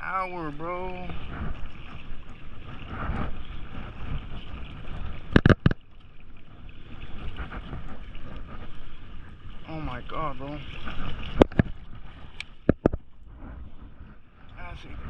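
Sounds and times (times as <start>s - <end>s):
water washing against rocks: 0.0s - 13.0s
wind buffeting microphone: 0.0s - 15.0s
sharp knocks: 5.3s - 5.8s, 12.6s - 13.0s.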